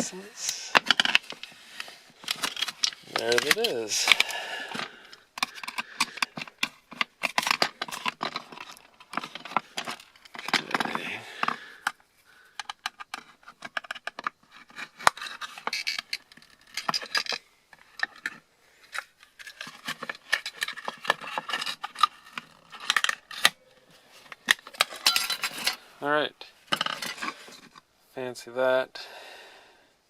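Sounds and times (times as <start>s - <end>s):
small metal parts clicking: 12.6s - 18.4s, 24.4s - 25.8s.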